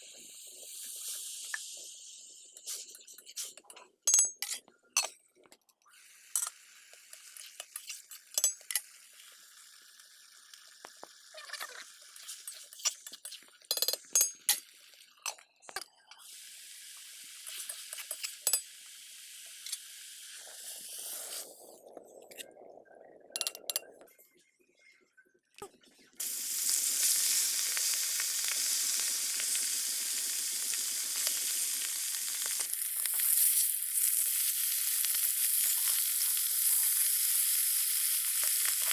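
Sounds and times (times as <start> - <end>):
food sizzling in hot oil: 0.0 - 4.2, 5.9 - 21.8, 26.2 - 38.9.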